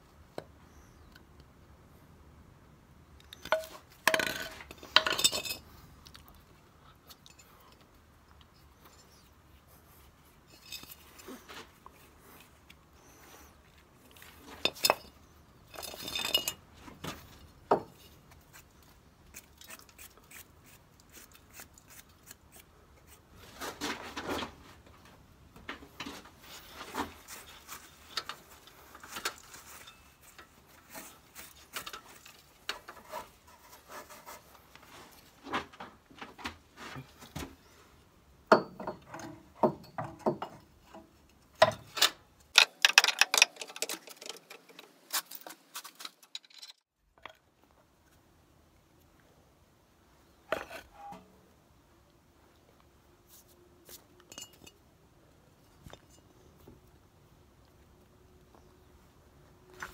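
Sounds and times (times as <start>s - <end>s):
metal tools clinking and scraping: 3.3s - 5.8s, 10.4s - 13.2s, 14.1s - 18.2s, 26.6s - 33.3s, 38.5s - 46.9s, 54.2s - 54.8s.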